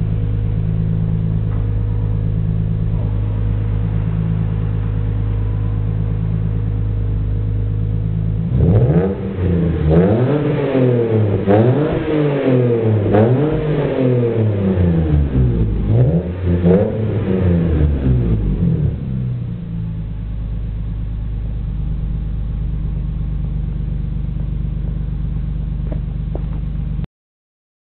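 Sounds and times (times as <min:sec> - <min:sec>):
car engine idling: 0:00.0 - 0:27.0
engine revving in blips: 0:08.3 - 0:19.7.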